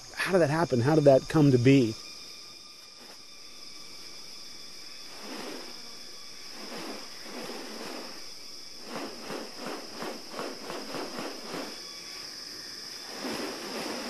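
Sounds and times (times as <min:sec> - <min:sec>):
rainforest insects droning: 0:00.0 - 0:14.0
rustling strokes: 0:05.0 - 0:12.3, 0:12.9 - 0:14.0.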